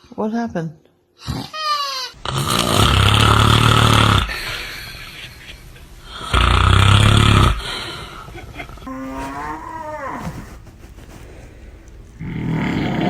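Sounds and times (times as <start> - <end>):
cat snoring: 2.2 - 5.0, 6.0 - 13.0
cat breathing: 7.4 - 13.0.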